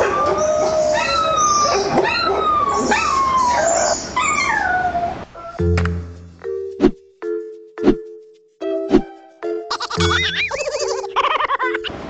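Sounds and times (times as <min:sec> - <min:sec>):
dog yelping and howling: 0:00.0 - 0:05.7.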